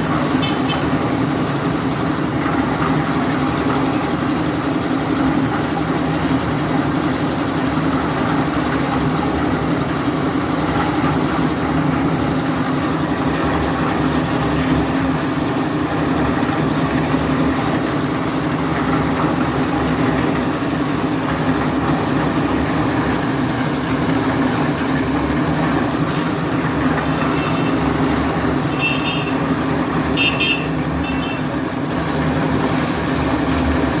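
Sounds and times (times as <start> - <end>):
heavy vehicle engine drone: 0.0 - 34.0.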